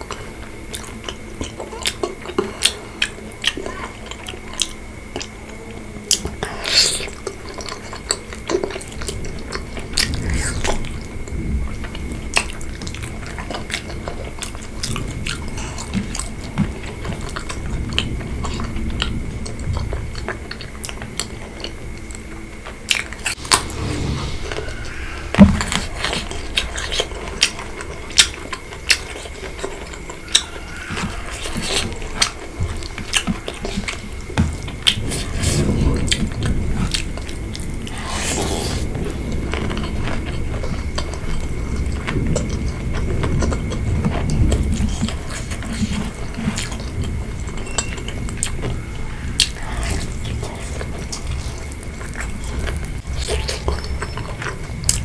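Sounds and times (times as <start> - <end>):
person chewing: 6.1 - 11.2, 22.9 - 55.0.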